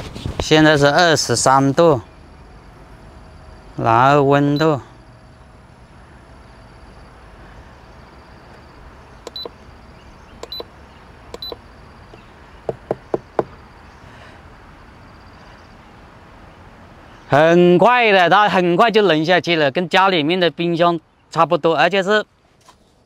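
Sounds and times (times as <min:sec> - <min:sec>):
faint steady hum: 0:00.9 - 0:16.1
quick clicks: 0:09.2 - 0:09.6, 0:10.4 - 0:10.7, 0:11.3 - 0:11.6
short electronic beeps: 0:09.3 - 0:09.6, 0:10.4 - 0:10.7, 0:11.4 - 0:11.6.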